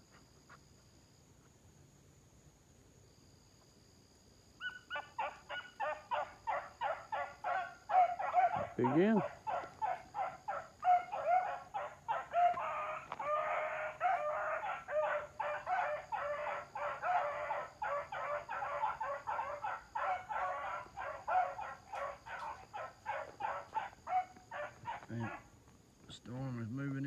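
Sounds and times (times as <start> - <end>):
puppies barking and yelping: 4.6 - 25.4.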